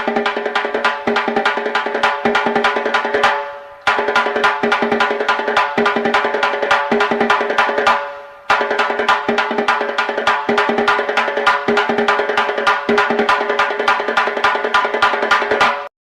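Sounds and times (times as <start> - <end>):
sharp percussive strikes: 0.0 - 15.9.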